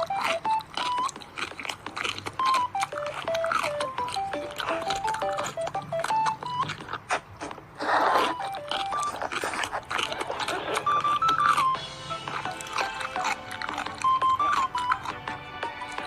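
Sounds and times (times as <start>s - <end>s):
beep-like melody music: 0.0s - 1.2s, 2.4s - 6.8s, 8.3s - 9.3s, 10.0s - 16.0s.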